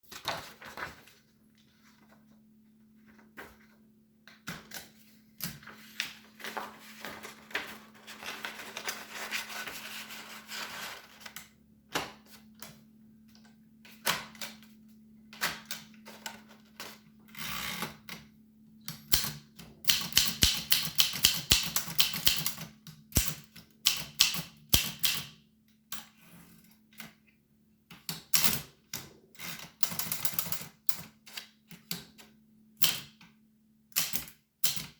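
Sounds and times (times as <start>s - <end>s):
typewriter keys clacking: 19.9s - 25.2s.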